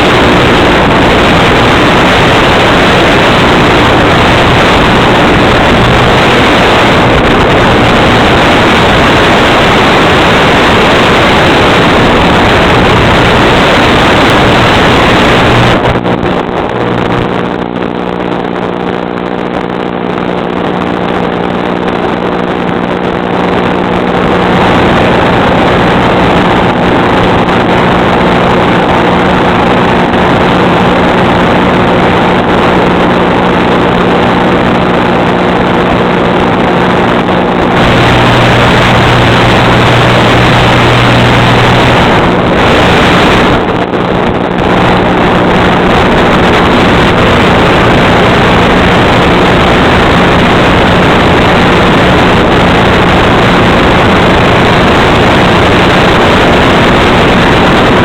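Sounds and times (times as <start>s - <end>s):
loud rushing noise: 0.0s - 58.0s
steady motor drone: 0.0s - 58.0s.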